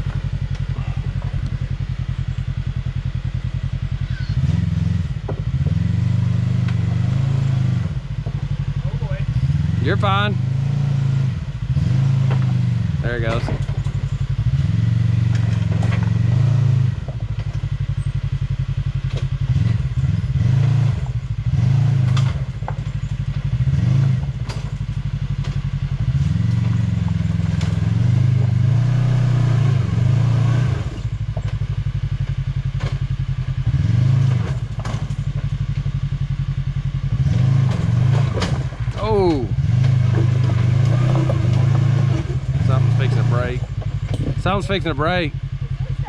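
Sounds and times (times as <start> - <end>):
utility vehicle engine revving: 0.0 - 46.0
knocks and scrapes on rocks: 39.7 - 44.6.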